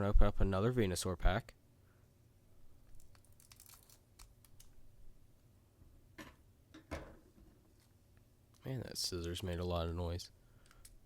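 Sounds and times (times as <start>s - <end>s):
scissors snipping foil wrapper: 3.0s - 4.7s.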